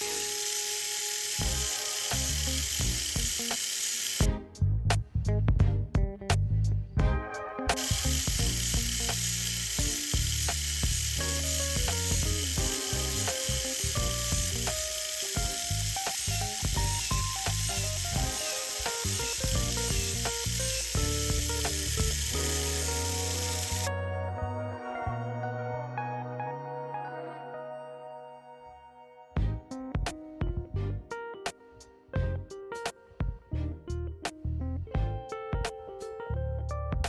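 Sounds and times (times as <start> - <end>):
toy car motor whirring: 0.0 - 4.3, 7.8 - 23.9
background music: 0.0 - 37.0.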